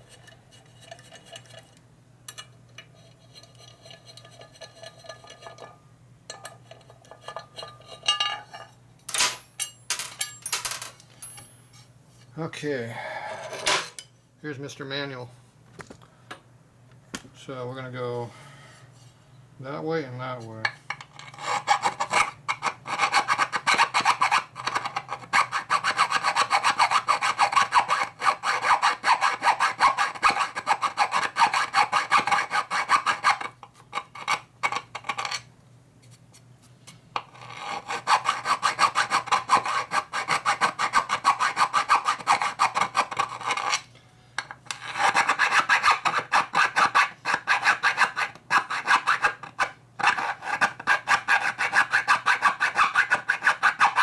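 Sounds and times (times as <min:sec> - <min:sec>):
file rasping on metal: 0:21.2 - 0:35.3, 0:37.3 - 0:43.7, 0:44.8 - 0:54.0.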